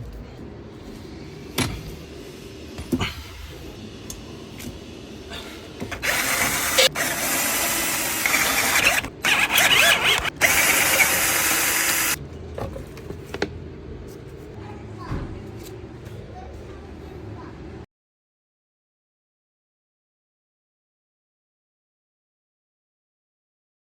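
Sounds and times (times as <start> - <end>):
power tool running: 5.8 - 12.2.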